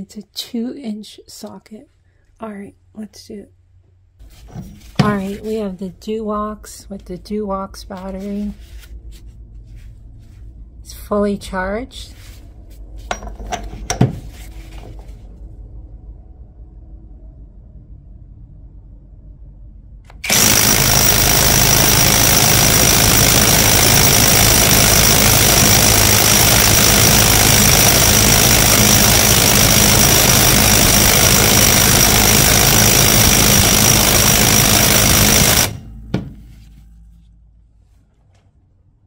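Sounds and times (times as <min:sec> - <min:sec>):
impact wrench hammering: 0:13.1 - 0:14.2, 0:20.1 - 0:36.4.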